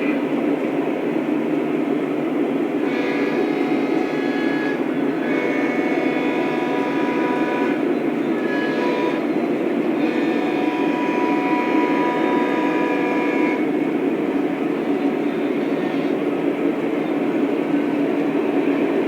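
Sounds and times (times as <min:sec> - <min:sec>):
model train rumbling on track: 0:00.0 - 0:19.0.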